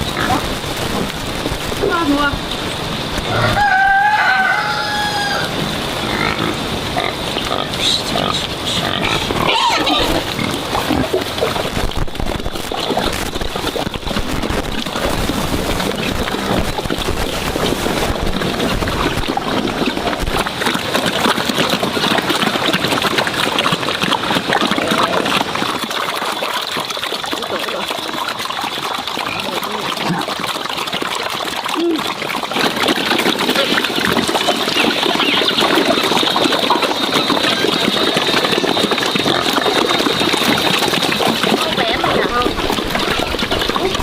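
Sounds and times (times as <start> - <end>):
pig squealing: 0.0 - 0.5, 3.2 - 11.6, 32.9 - 40.8, 41.6 - 44.0
pigs grunting: 0.0 - 0.5, 3.2 - 11.8, 14.0 - 44.0
water splashing and trickling: 0.0 - 44.0.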